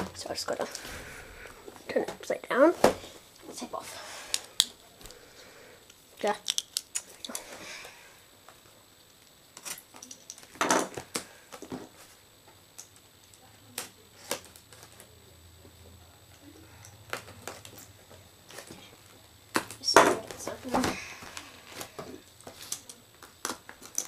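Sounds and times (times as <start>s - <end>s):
cardboard and plastic packaging rustling: 17.1s - 24.0s.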